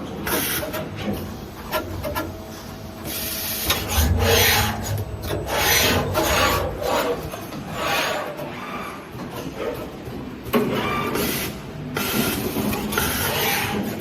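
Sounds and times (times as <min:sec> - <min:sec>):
low machine hum: 0:01.0 - 0:10.5.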